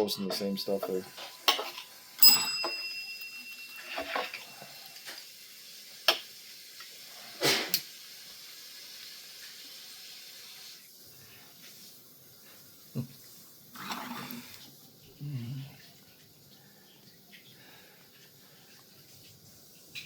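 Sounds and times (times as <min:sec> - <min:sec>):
tap bell ringing: 0:00.2 - 0:04.8.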